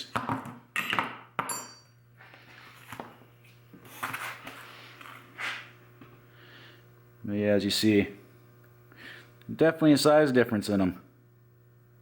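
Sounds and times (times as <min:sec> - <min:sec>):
steady low hum: 0:00.0 - 0:12.0
metal tools clinking and knocking: 0:00.8 - 0:01.9.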